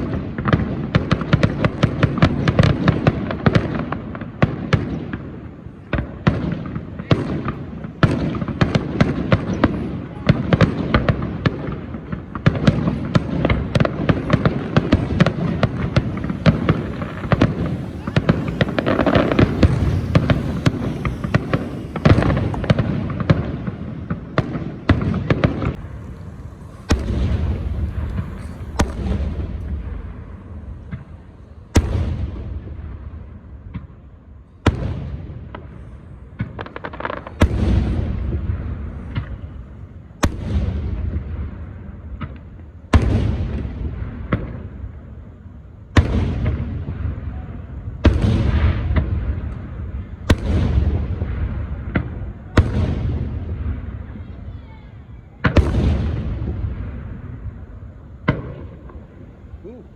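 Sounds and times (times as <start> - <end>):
crackling and low rumble: 0.0 - 54.5
sharp bangs: 10.4 - 35.8.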